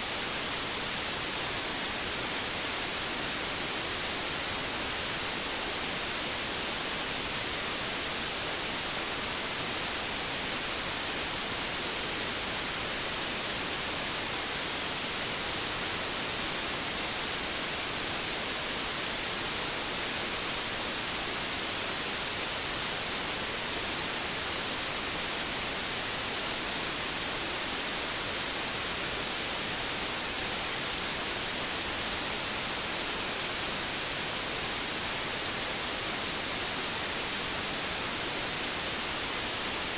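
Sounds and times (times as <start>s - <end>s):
steady white noise hiss: 0.0s - 39.9s.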